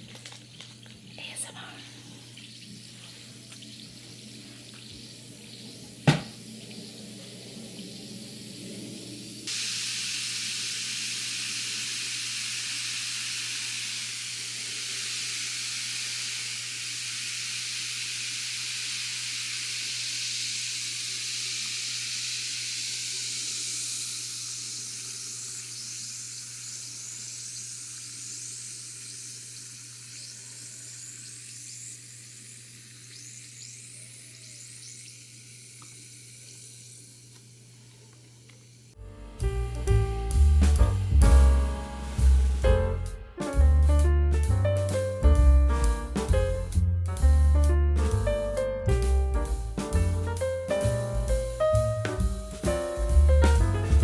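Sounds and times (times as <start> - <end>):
tablet fizzing in water: 2.1 - 37.5.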